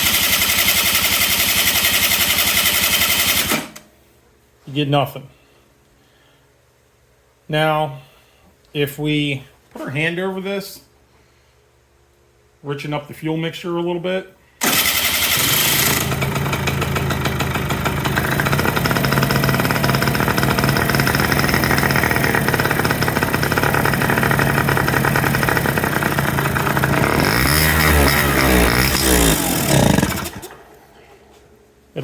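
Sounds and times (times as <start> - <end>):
electric starter cranking: 0.0 - 3.9, 14.6 - 31.1
scooter engine running and revving: 14.7 - 30.6.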